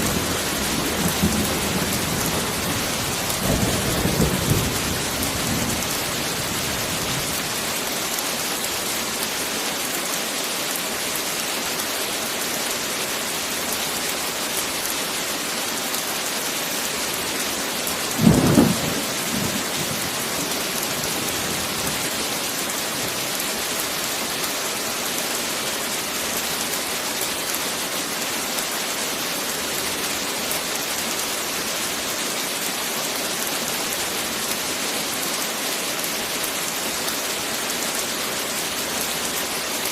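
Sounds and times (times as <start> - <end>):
heavy rain: 0.0 - 39.9
low thunderclap: 18.2 - 20.2.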